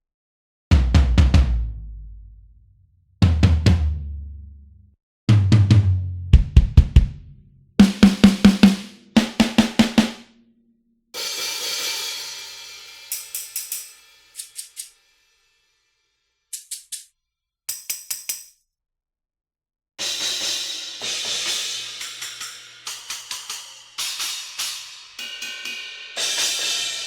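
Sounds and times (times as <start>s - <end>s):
drum hits: 0.7s - 1.8s, 3.2s - 4.1s, 5.3s - 10.3s
cymbal ticks: 13.1s - 15.0s, 16.5s - 17.1s, 22.0s - 25.7s.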